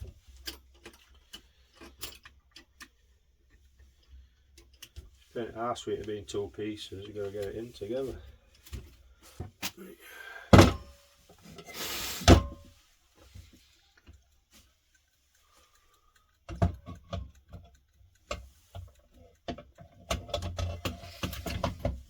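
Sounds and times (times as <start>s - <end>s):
knocks and clunks of clock parts: 0.0s - 5.3s, 10.5s - 14.2s, 15.6s - 22.0s
brief scrape: 11.6s - 12.5s.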